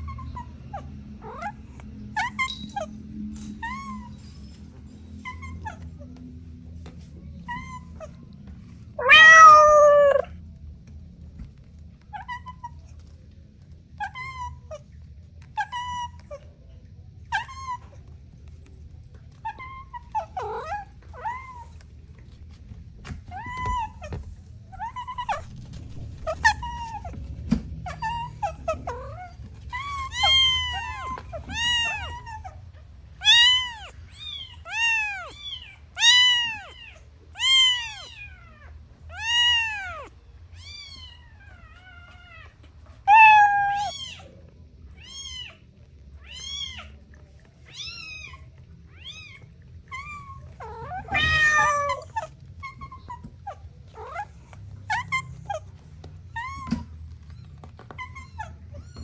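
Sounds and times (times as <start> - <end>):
kittens mewing: 8.9 - 10.4, 17.3 - 59.0
rough harsh cat cry: 9.0 - 10.3, 33.2 - 42.2, 47.6 - 53.2.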